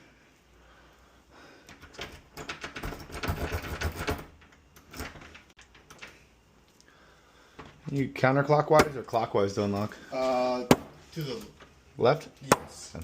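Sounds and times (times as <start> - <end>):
keys clicking in door lock: 1.7 - 6.2.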